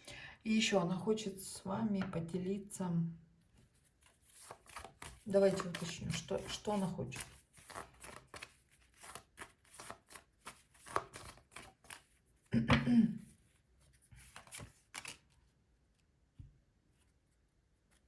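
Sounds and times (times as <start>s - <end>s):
cards shuffling: 3.9s - 12.2s, 14.2s - 15.4s.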